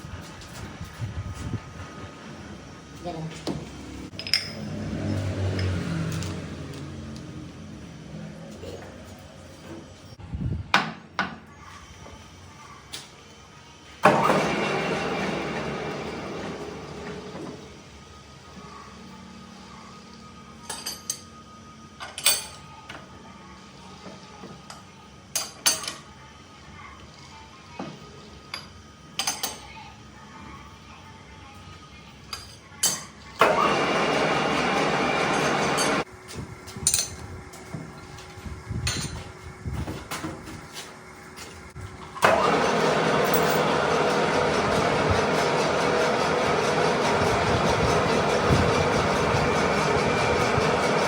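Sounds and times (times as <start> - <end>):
metal tools clinking: 4.1 - 6.4, 20.6 - 21.3, 36.8 - 37.2, 38.8 - 39.2
low machine hum: 33.4 - 51.0.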